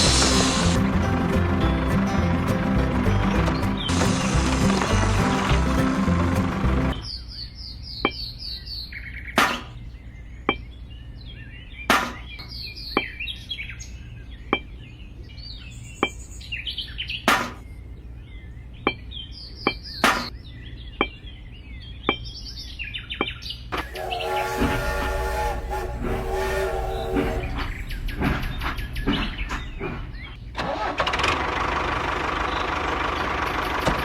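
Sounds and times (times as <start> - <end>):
small birds chirping: 3.4 - 24.5, 26.7 - 30.6
sharp knocks: 9.4 - 9.8, 11.9 - 12.4, 17.3 - 17.6, 20.0 - 20.3.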